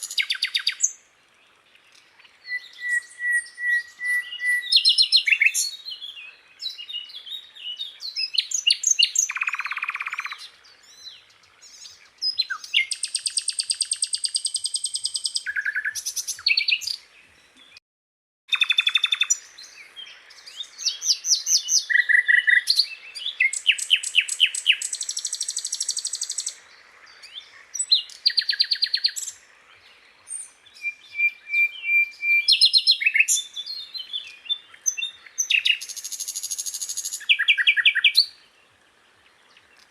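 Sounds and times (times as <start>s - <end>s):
bird singing trills and whistles: 0.0s - 1.0s, 2.2s - 17.8s, 18.5s - 38.5s.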